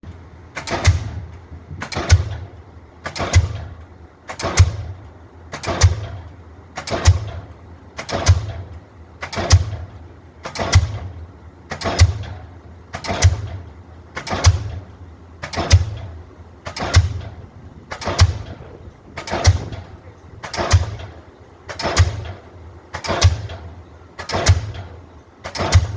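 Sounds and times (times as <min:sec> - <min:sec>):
pile hammer striking: 0:00.5 - 0:11.1, 0:15.4 - 0:17.3, 0:19.2 - 0:25.9.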